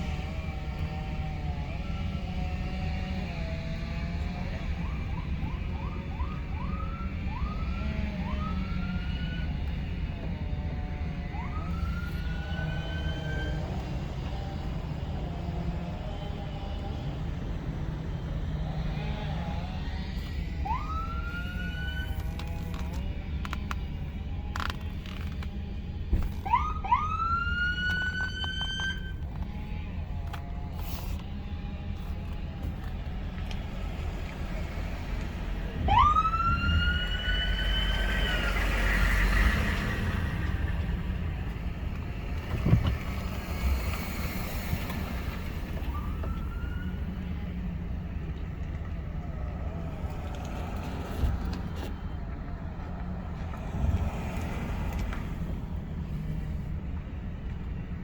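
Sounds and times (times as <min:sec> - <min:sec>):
low vehicle rumble: 0:00.0 - 0:58.0
siren whoops: 0:04.6 - 0:09.7, 0:11.3 - 0:14.0, 0:20.2 - 0:22.5, 0:26.4 - 0:29.2, 0:35.8 - 0:39.4, 0:45.6 - 0:47.3.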